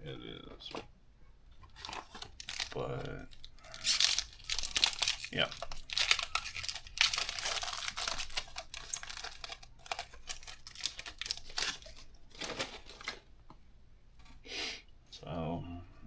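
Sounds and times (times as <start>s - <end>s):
foil wrapper crinkling: 1.5s - 13.3s.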